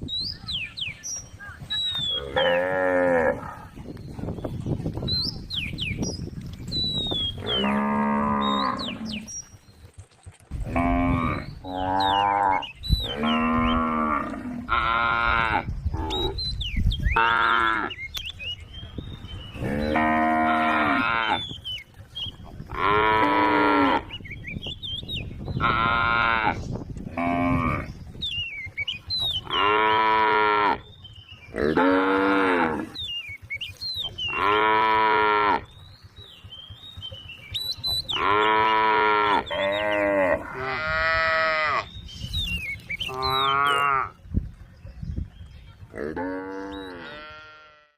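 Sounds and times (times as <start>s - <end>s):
cows mooing: 2.1s - 3.8s, 7.3s - 9.4s, 10.6s - 16.4s, 17.2s - 18.0s, 19.6s - 21.6s, 22.7s - 24.2s, 25.6s - 27.9s, 29.4s - 30.9s, 31.5s - 33.1s, 34.1s - 35.7s, 37.8s - 42.0s, 43.1s - 44.2s, 45.9s - 47.9s.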